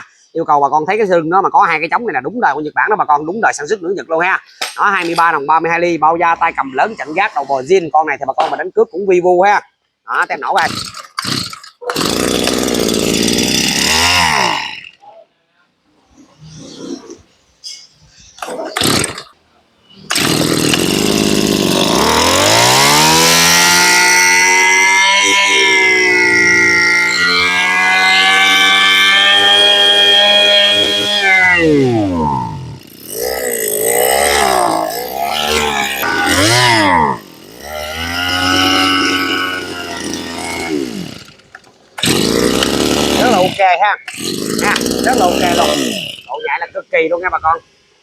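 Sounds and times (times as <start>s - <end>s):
pull starter rasps: 10.2s - 15.0s, 16.0s - 46.4s
brush cutter engine running: 10.6s - 15.0s, 18.7s - 19.3s, 19.9s - 46.3s.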